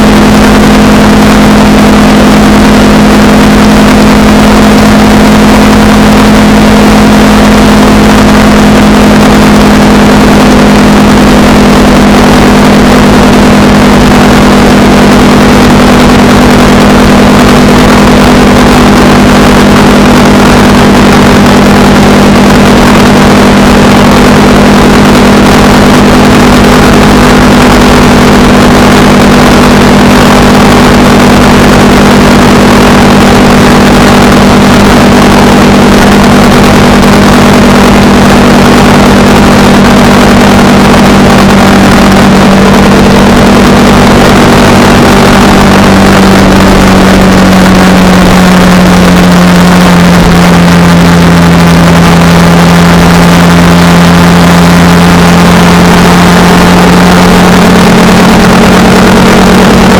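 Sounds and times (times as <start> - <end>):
motorcycle engine cruising: 0.0 - 59.9.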